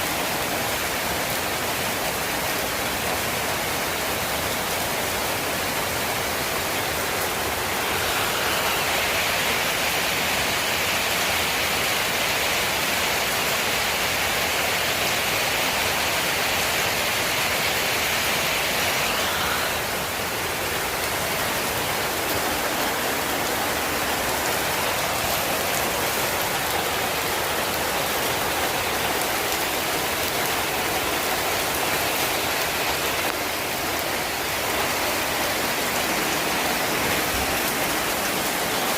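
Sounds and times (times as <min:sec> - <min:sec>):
rain hissing: 0:00.0 - 0:38.9
bright high hiss: 0:06.5 - 0:11.1, 0:17.8 - 0:26.6.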